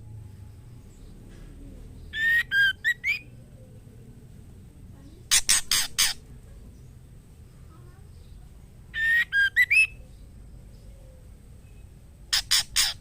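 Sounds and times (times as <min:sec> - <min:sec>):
bird whistled notes: 0:02.1 - 0:03.3, 0:09.0 - 0:10.0
short harsh bird notes: 0:05.3 - 0:06.2, 0:11.6 - 0:13.0.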